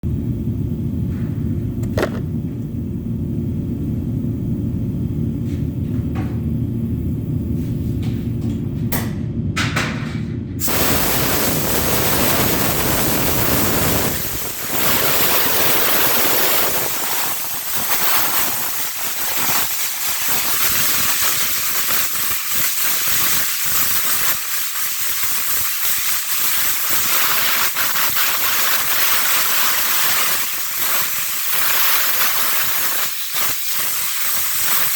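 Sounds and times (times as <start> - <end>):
low steady rumble: 0.0 - 15.2
spray gun hissing: 10.6 - 34.9.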